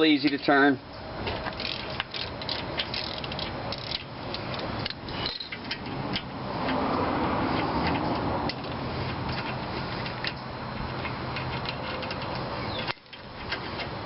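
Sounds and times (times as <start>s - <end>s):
socket ratchet clicking: 1.4s - 7.0s.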